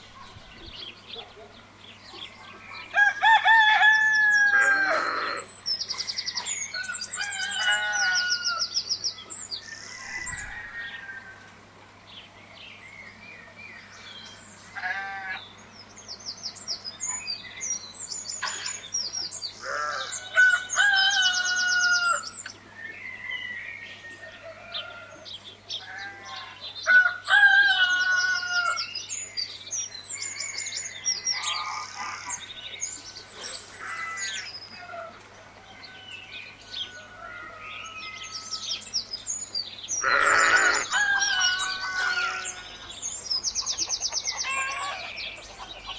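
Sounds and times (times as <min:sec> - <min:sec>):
rooster crowing: 0:02.9 - 0:05.4, 0:06.7 - 0:08.7, 0:09.7 - 0:11.6, 0:19.6 - 0:22.3, 0:25.9 - 0:28.9, 0:40.0 - 0:42.8
small birds chirping: 0:12.0 - 0:26.9, 0:28.0 - 0:45.9.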